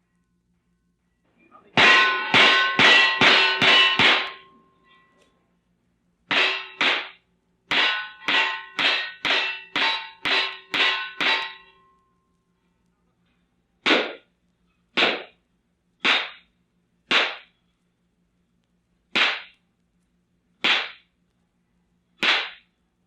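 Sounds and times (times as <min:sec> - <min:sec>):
metallic ring: 0:01.8 - 0:05.4, 0:06.3 - 0:07.1, 0:07.7 - 0:12.3.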